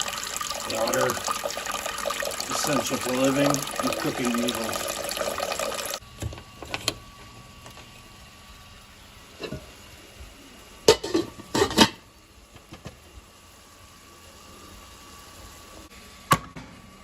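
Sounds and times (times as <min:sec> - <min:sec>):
pots and pans clanking: 0:09.4 - 0:09.7, 0:10.8 - 0:12.0.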